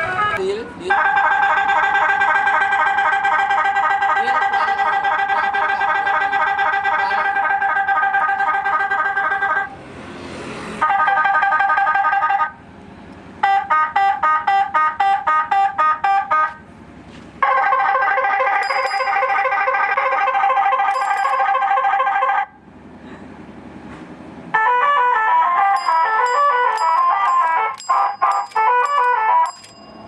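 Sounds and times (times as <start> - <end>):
music through siren speaker: 0.0 - 8.4, 17.4 - 22.5.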